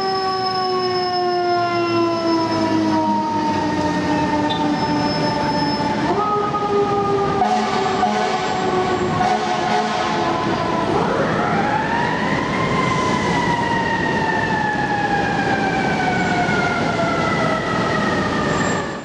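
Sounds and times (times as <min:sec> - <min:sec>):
fire engine air horn: 0:00.0 - 0:11.4
truck and street noise: 0:00.0 - 0:19.0.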